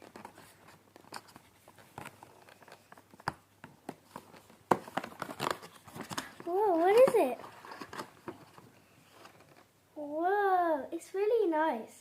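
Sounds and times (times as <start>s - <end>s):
cardboard packaging crinkling: 4.0s - 9.7s.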